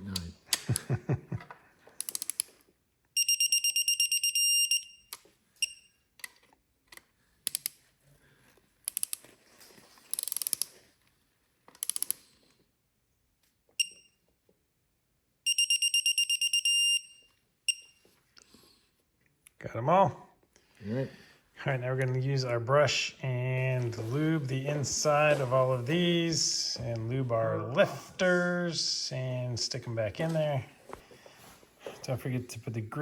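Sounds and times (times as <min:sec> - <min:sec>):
tool handling clicks: 0:01.9 - 0:02.7, 0:05.1 - 0:07.8, 0:08.8 - 0:09.4, 0:10.0 - 0:10.8, 0:11.7 - 0:12.3
torque wrench beeping: 0:03.2 - 0:06.0, 0:13.8 - 0:14.2, 0:15.5 - 0:18.0.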